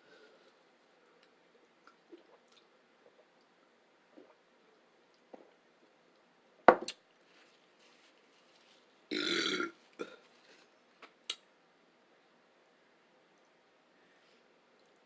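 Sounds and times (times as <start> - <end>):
person burping: 9.1 - 10.2.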